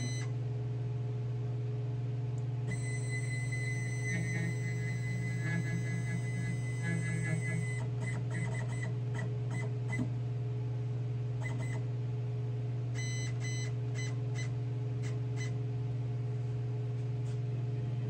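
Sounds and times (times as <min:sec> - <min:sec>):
steady low hum: 0:00.0 - 0:18.0
stepper motors whining: 0:02.7 - 0:08.8.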